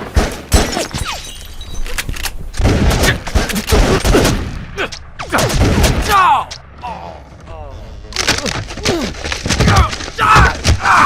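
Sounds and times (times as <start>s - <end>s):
rapid gunfire: 2.6s - 4.5s, 5.2s - 6.0s
people shouting: 8.9s - 11.0s.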